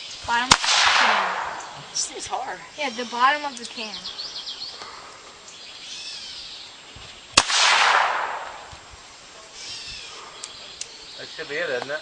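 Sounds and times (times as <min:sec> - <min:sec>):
pistol shot: 0:00.5 - 0:01.8, 0:07.4 - 0:08.7.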